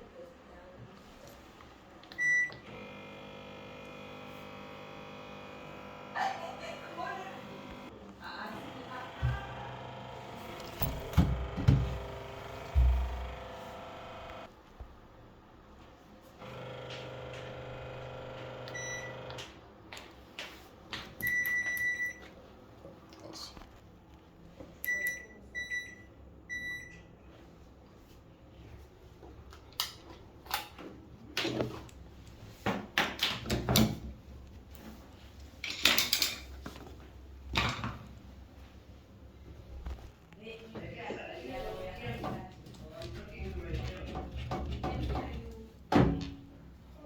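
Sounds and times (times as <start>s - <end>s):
washing machine hum: 0.8s - 14.8s, 15.9s - 19.8s.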